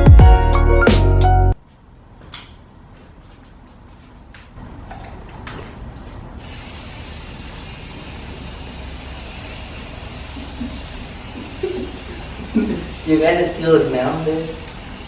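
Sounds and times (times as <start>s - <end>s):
spray hissing: 6.4s - 15.0s.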